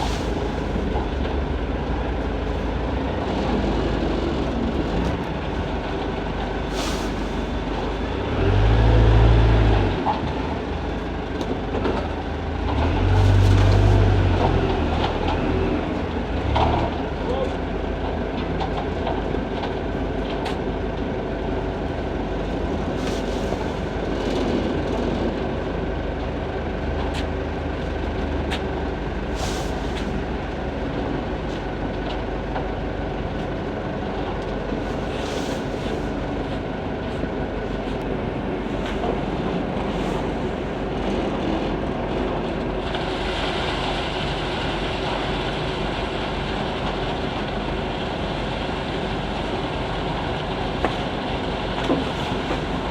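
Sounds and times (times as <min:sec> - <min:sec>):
heavy diesel machinery running: 0:00.0 - 0:52.9.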